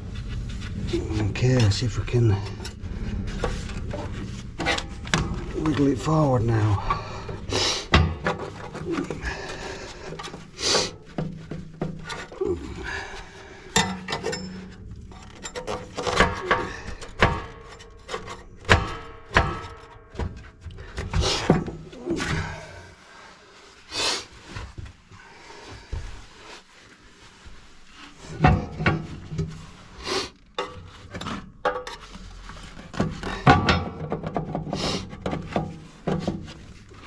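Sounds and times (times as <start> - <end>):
firebrick knocking and scraping in stove: 0.0 - 12.4, 13.7 - 22.4, 28.3 - 29.8, 30.5 - 37.0.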